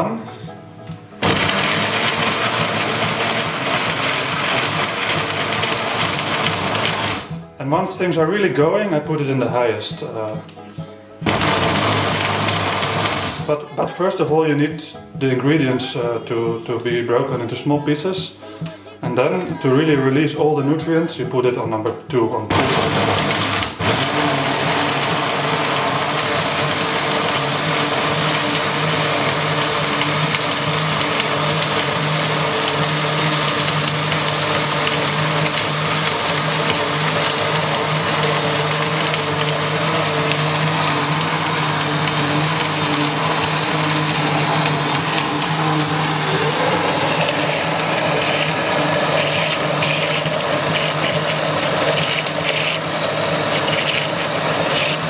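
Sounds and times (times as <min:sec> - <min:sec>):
electric blender running: 0:01.2 - 0:07.4, 0:11.2 - 0:13.6, 0:22.5 - 0:55.0.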